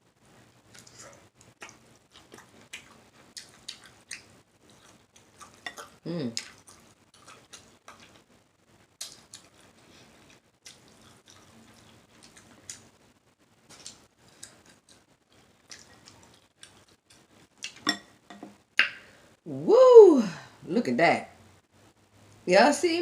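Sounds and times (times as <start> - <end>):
wet clicks and smacks of eating: 0.6 - 8.3, 8.9 - 13.0, 13.7 - 17.9.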